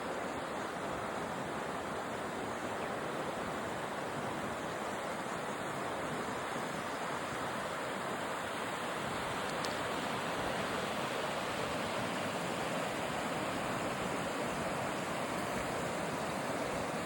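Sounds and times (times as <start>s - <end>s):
rushing water: 0.0s - 17.0s.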